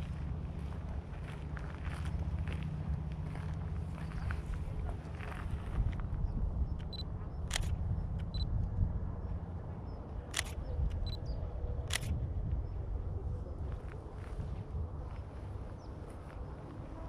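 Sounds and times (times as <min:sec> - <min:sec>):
sharp clicks: 0:06.7 - 0:08.5.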